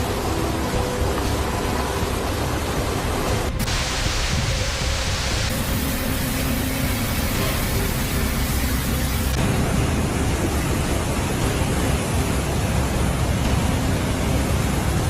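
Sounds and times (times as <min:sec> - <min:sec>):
water rushing: 0:00.0 - 0:15.0.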